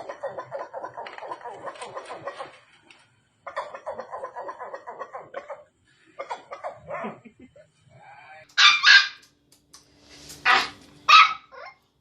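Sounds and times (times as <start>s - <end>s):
dog barking: 8.6s - 9.2s, 10.4s - 11.7s.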